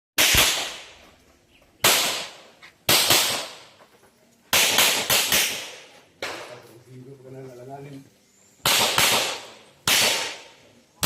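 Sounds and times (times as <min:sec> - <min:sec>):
gunshots with echo: 0:08.6 - 0:10.5.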